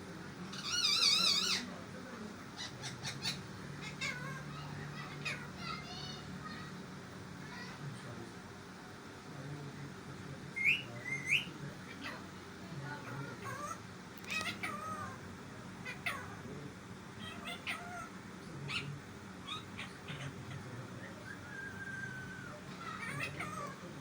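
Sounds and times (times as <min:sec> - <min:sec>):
parrot chirping and squawking: 0:00.4 - 0:01.7, 0:02.6 - 0:06.8, 0:10.6 - 0:12.3, 0:13.0 - 0:15.2, 0:15.8 - 0:16.4, 0:17.2 - 0:23.9.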